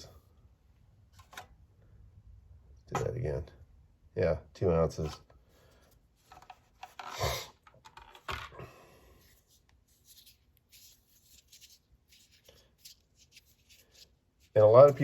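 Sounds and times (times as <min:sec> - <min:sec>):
hands rubbing and scraping object: 0:09.2 - 0:15.0.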